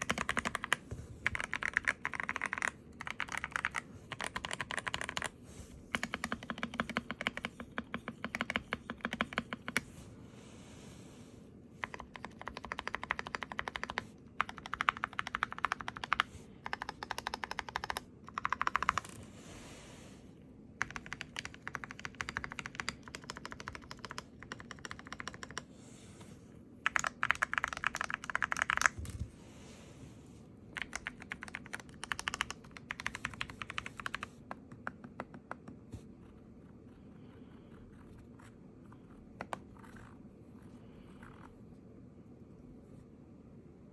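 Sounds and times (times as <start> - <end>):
mechanical keyboard typing: 0.0 - 9.9, 11.8 - 19.2, 20.8 - 25.7, 26.8 - 29.2, 30.7 - 35.8.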